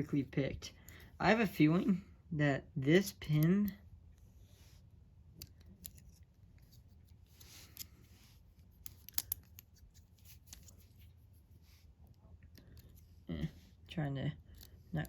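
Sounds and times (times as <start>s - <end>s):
padlock clicks and scrapes: 5.3s - 11.1s.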